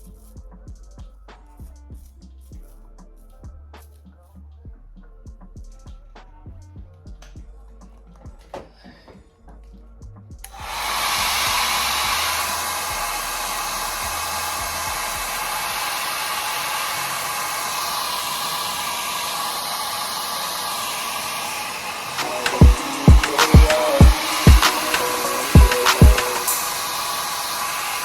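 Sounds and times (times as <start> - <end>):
hair dryer blowing: 10.5 - 28.0.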